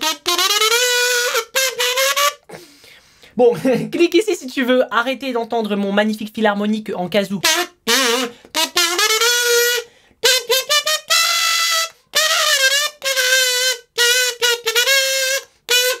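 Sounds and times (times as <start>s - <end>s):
kazoo melody: 0.0s - 2.9s, 7.4s - 16.0s.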